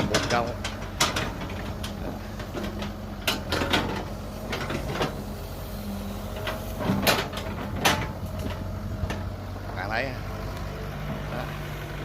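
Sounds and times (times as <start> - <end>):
excavator clanks and squeaks: 0.0 - 12.0
excavator engine humming: 0.0 - 12.0.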